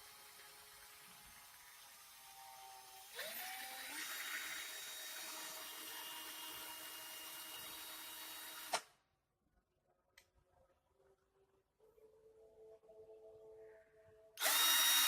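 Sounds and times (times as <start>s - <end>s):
cordless drill motor whine: 1.4s - 8.8s, 14.4s - 15.0s.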